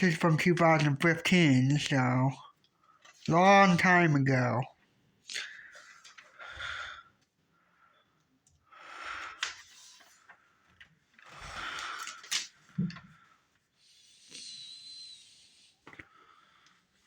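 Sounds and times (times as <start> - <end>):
magazine pages rustling: 0.0 - 2.3, 3.0 - 4.5, 9.4 - 12.7.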